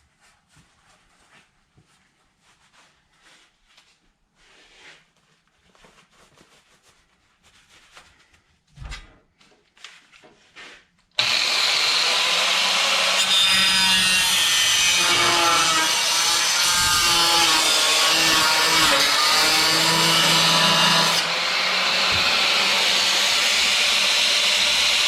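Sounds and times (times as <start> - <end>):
power tool cutting metal: 11.2 - 25.0.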